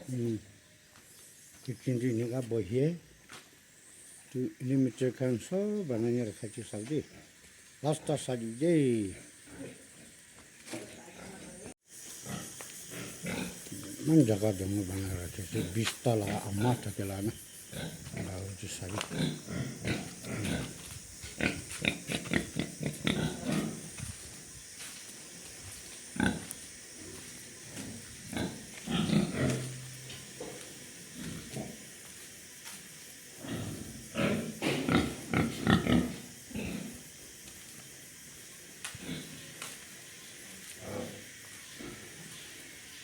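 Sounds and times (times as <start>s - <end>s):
pigs grunting: 12.2s - 14.0s, 17.7s - 20.8s, 21.4s - 23.9s, 27.7s - 29.9s, 33.4s - 37.0s.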